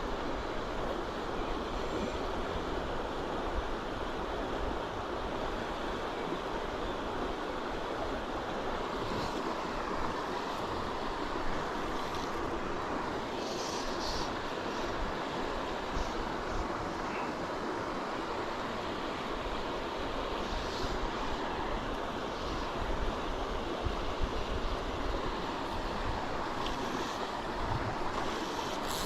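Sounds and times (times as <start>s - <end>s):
river water flowing: 0.0s - 29.0s
wind rumble on microphone: 19.5s - 29.0s.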